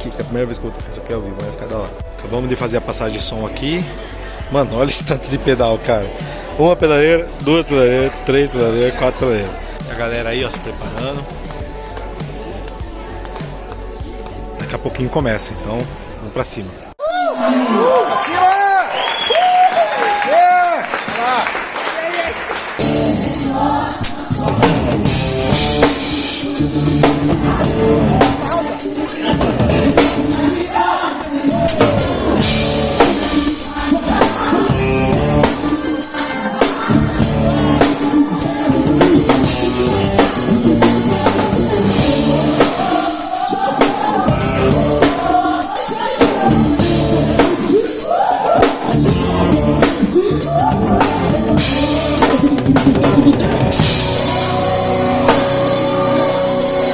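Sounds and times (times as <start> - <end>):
singing: 0.0 - 17.0, 23.0 - 56.9
worship band playing: 22.1 - 56.9
drum kit: 22.8 - 56.9.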